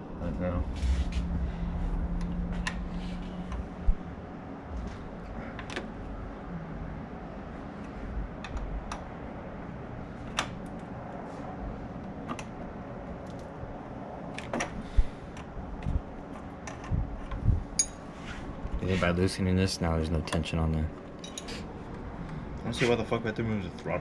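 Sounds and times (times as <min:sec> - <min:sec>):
hand tools clinking on metal parts: 0:21.2 - 0:21.6.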